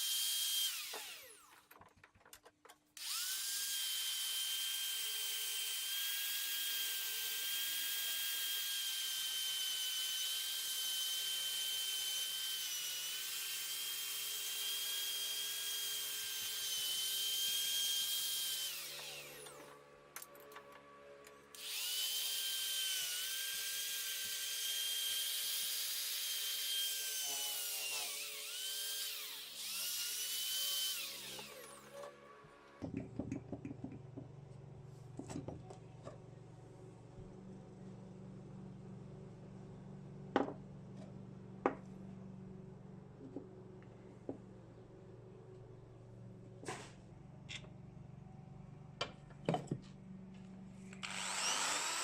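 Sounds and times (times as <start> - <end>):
electric power tool whining: 0.0 - 1.6, 3.0 - 19.8, 21.5 - 32.2, 50.9 - 52.0.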